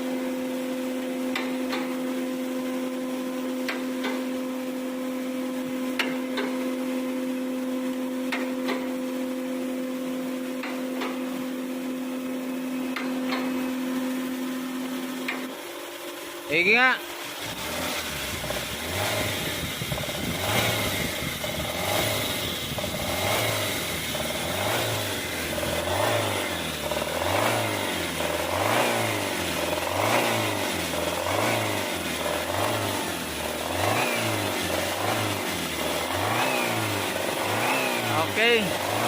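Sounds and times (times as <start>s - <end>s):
engine rattling: 12.9s - 39.0s
car engine revving in blips: 17.2s - 39.0s.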